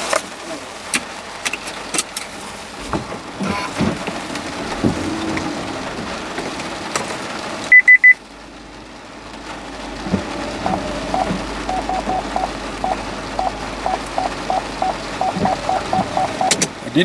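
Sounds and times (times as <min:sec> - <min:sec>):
high-pitched electronic beeps: 0:10.6 - 0:16.6.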